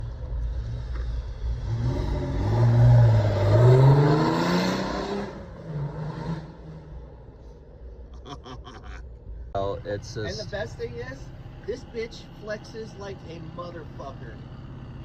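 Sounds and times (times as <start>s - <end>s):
truck engine accelerating: 0.0s - 7.1s.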